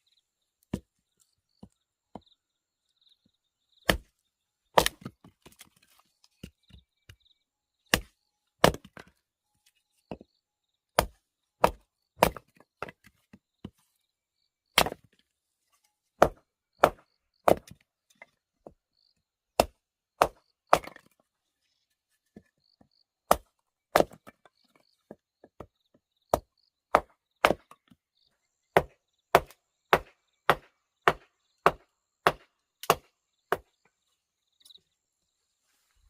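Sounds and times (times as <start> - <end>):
wood being chopped: 3.8 - 5.8, 7.9 - 9.2, 11.0 - 13.4, 14.7 - 15.2, 16.2 - 17.8, 19.6 - 21.2, 23.3 - 24.5, 26.3 - 28.0, 28.7 - 33.7.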